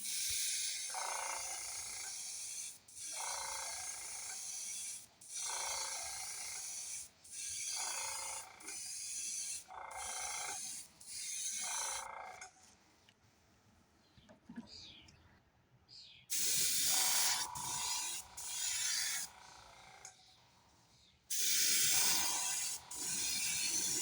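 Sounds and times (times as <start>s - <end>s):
airbrush spraying hiss: 0.0s - 12.0s, 16.3s - 19.3s, 21.3s - 24.0s.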